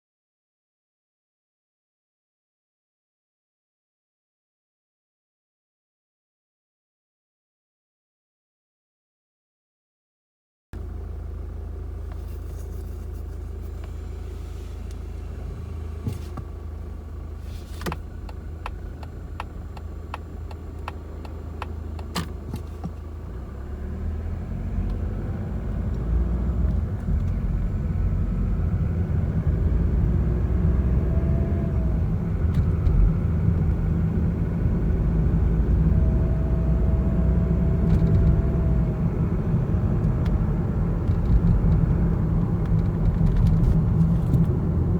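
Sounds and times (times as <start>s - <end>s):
car engine and road rumble: 10.8s - 44.9s.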